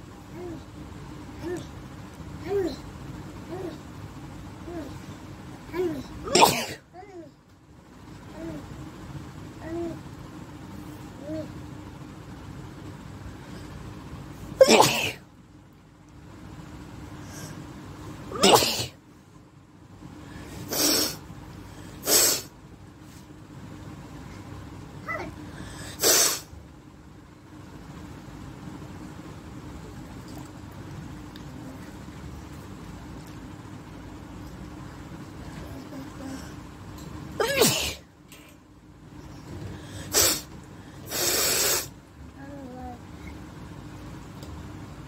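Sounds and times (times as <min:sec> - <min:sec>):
woman sneezing: 0:14.6 - 0:15.2, 0:37.4 - 0:38.1
woman snorting air through nose: 0:20.6 - 0:21.2, 0:22.0 - 0:22.5, 0:25.8 - 0:26.5, 0:39.8 - 0:41.9.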